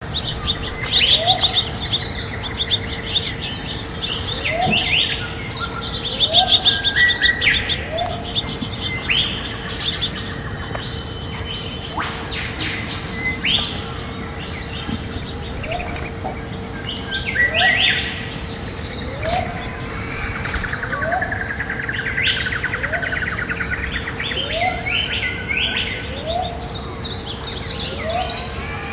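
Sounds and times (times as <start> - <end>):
low rising bird note: 0.0 - 26.6
birds chirping and trilling: 0.0 - 28.9
faint steady hum: 0.0 - 28.9.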